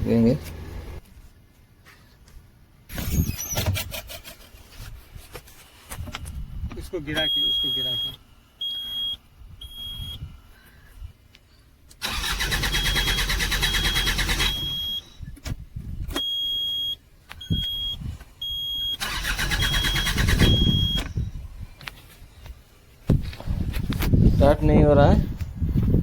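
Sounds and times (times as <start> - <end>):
high warning beep: 7.0 - 10.2, 12.7 - 15.3, 16.2 - 21.3
diesel engine cranking: 11.9 - 15.3, 18.4 - 21.4.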